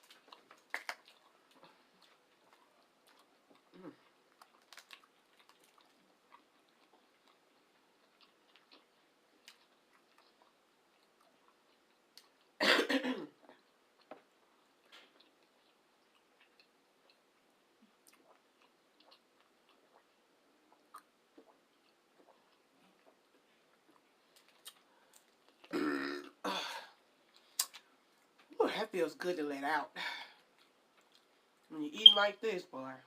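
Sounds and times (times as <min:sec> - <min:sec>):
person chewing: 0:00.0 - 0:12.6, 0:13.3 - 0:28.5
loud throat sound: 0:25.7 - 0:26.8.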